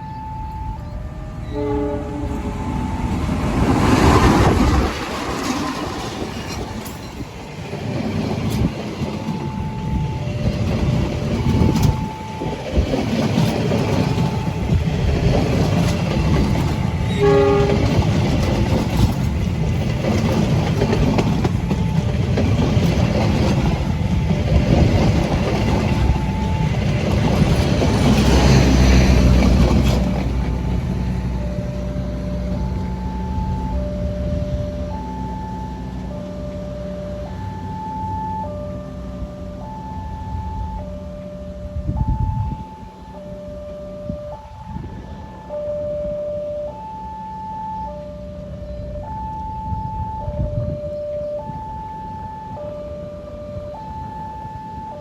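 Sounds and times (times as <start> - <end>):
train horn blasts: 0.0 - 3.0, 17.0 - 18.2
locomotive engine running: 0.0 - 55.0
train wheels rolling on rails: 0.0 - 55.0.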